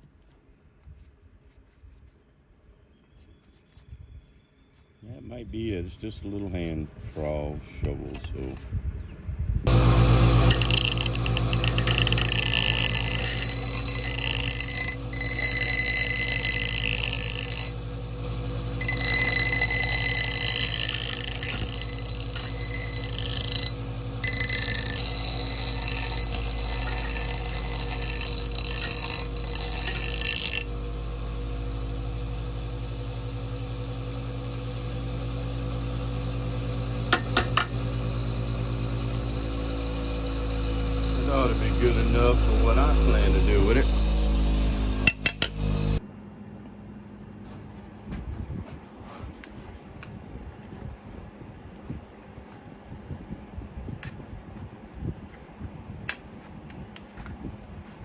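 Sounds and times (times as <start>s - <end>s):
grinder scraping metal: 9.7s - 33.2s, 36.9s - 46.0s
electric grinder motor hum: 9.7s - 46.0s.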